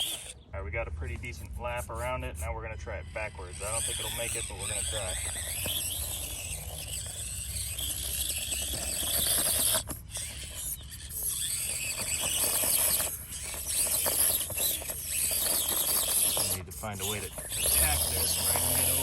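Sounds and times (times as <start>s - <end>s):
small electric motor whining: 0.0s - 19.0s
tyres brushing through weeds: 0.9s - 19.0s.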